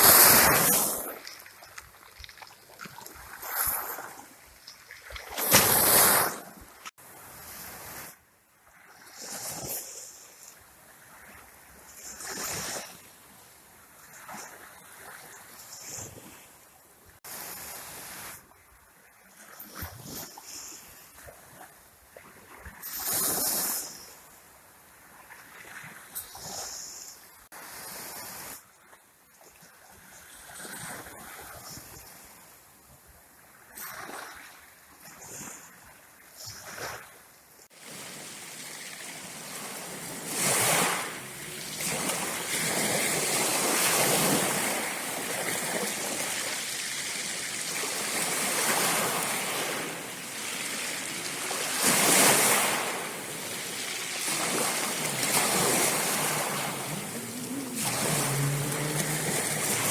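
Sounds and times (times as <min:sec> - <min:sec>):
waterfall rushing: 0:37.8 - 0:43.9, 0:50.2 - 0:59.9.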